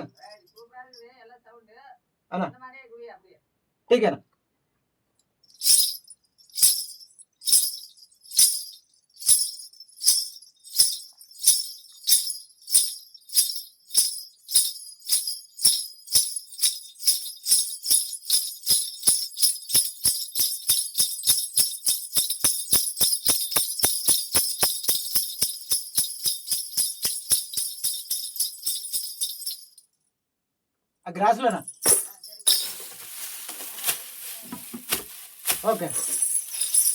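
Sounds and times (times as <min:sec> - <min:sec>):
jingling bells shaken: 0:00.0 - 0:01.1, 0:05.5 - 0:30.0, 0:31.6 - 0:36.9.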